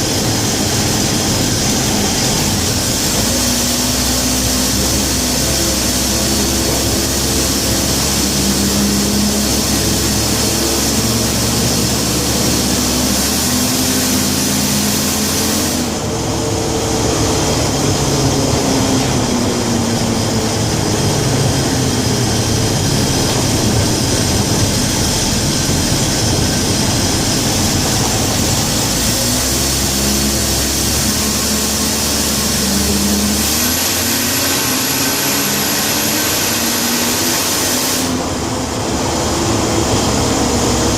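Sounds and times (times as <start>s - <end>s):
van engine running: 0.0s - 40.9s.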